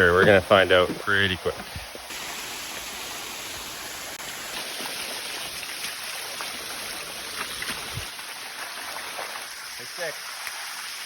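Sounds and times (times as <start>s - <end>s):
waterfall rushing: 2.1s - 5.6s.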